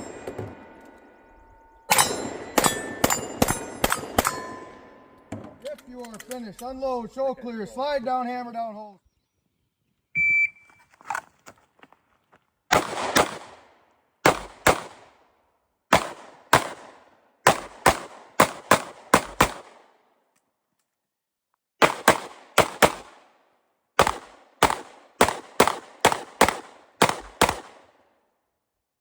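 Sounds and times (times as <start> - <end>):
pistol shots with echo: 1.9 - 4.8, 12.7 - 15.2, 15.9 - 19.9, 21.8 - 23.4, 24.0 - 28.0.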